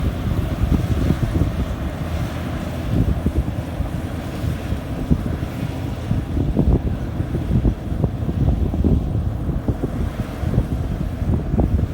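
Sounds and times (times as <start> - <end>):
combine harvester rumbling: 0.0 - 11.9
wind buffeting microphone: 0.0 - 11.9.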